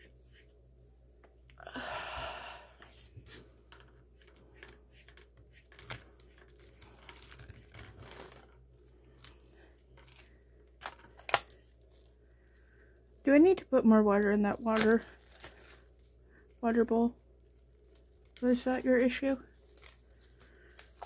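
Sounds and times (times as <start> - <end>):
packaging crinkling and rustling: 3.7 - 13.2, 14.0 - 21.0
plastic shrink wrap ripping: 4.5 - 12.2, 14.1 - 21.0.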